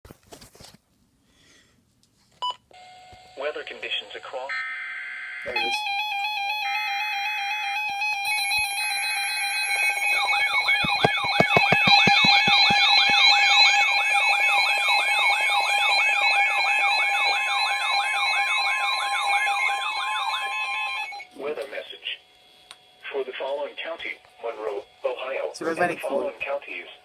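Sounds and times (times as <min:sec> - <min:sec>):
wailing siren-style alarm: 0:05.1 - 0:21.4
screechy digital data bursts: 0:05.5 - 0:21.2.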